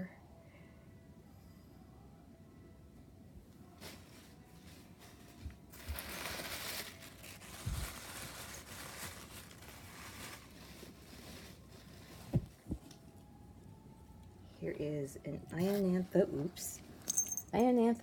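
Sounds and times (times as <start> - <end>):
plastic packaging crinkling: 3.8 - 12.6.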